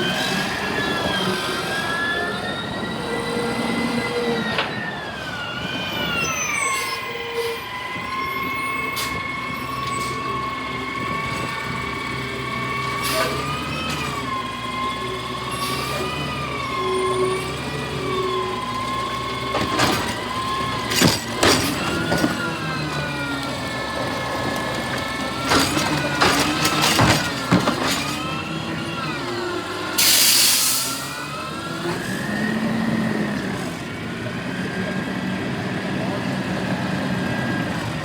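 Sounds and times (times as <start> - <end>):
garbage truck hydraulic whine: 0.0 - 38.0.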